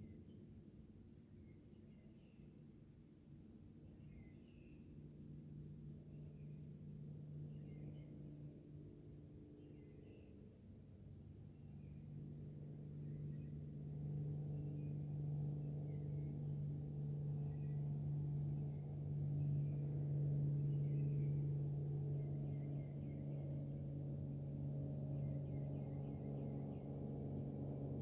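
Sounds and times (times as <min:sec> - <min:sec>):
low droning hum: 0:11.2 - 0:28.0.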